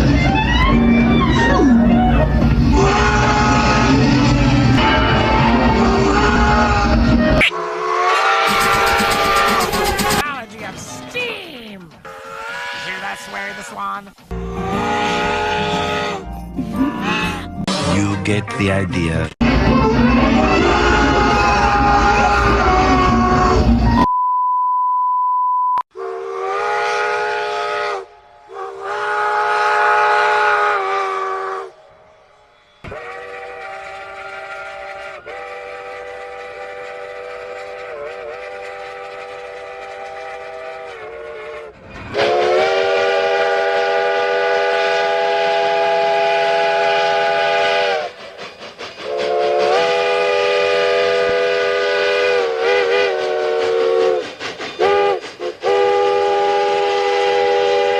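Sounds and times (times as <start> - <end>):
multi-chime train whistle blasts: 7.4 - 9.6, 25.9 - 48.2, 49.0 - 54.2, 54.8 - 57.9
short steady beep: 24.1 - 25.8.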